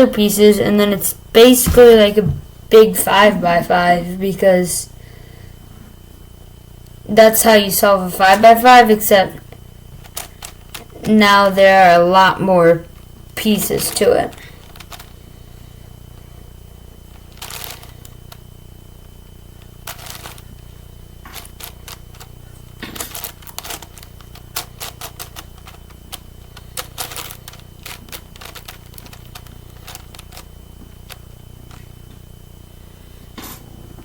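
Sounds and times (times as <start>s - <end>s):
plastic puzzle cube clicking: 26.8s - 30.4s.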